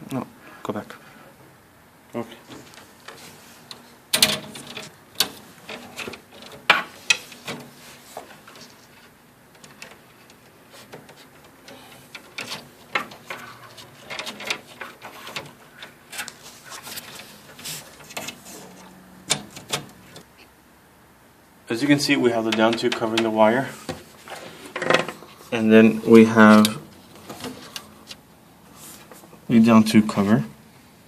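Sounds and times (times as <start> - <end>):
small parts clicking and knocking: 8.3 - 16.4.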